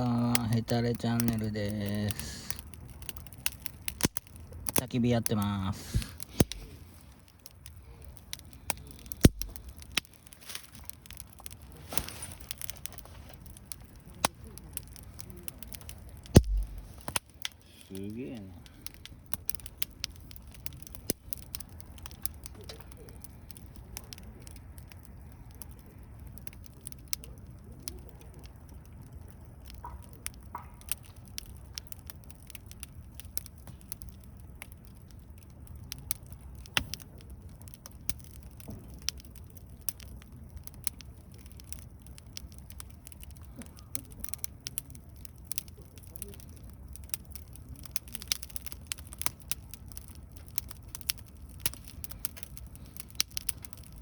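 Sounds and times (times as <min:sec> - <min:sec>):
campfire crackling and popping: 0:00.0 - 0:54.0
low steady rumble: 0:03.8 - 0:22.6, 0:48.7 - 0:54.0.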